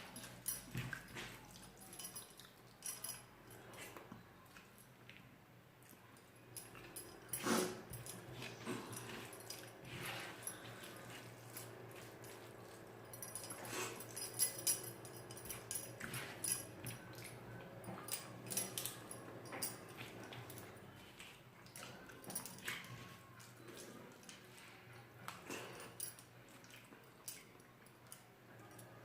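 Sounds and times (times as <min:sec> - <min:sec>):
chewing and mouth clicks: 0:00.2 - 0:14.6, 0:19.8 - 0:28.3.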